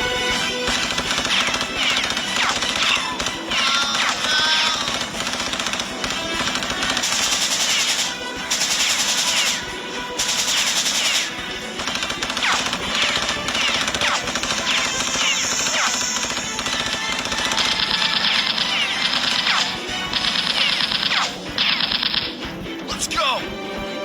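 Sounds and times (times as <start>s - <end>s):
automatic gunfire: 0.0s - 22.5s
background music: 0.0s - 24.0s.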